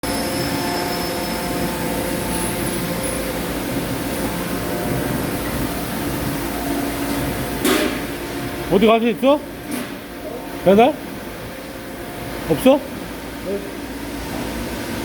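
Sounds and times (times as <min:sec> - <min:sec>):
cnc machine humming and whining: 0:00.0 - 0:15.0.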